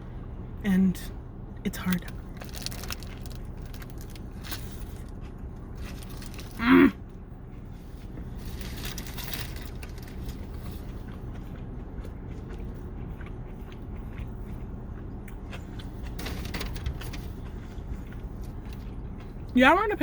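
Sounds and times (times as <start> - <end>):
steady low hum: 0.0 - 20.0
food crunching: 1.9 - 19.5
wrapper rustling: 2.3 - 5.1, 5.8 - 6.6, 8.3 - 10.8.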